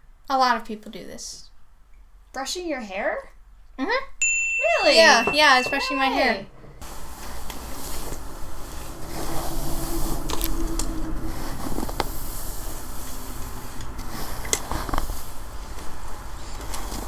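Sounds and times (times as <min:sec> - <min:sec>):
hairbrush rustling through hair: 0:06.8 - 0:17.0.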